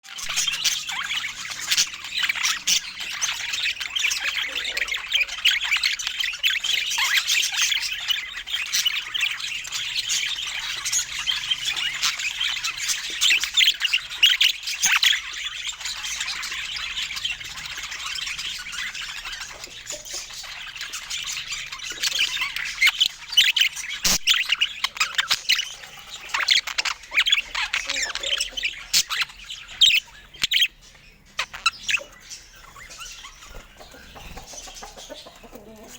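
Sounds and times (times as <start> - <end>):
budgerigars chattering and chirping: 0.0 - 35.9.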